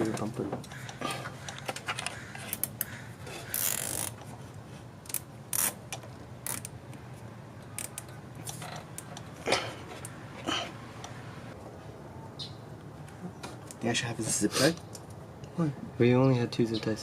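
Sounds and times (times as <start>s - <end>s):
hand tools clicking and ratcheting: 0.1s - 4.3s, 5.0s - 6.8s, 7.7s - 10.2s.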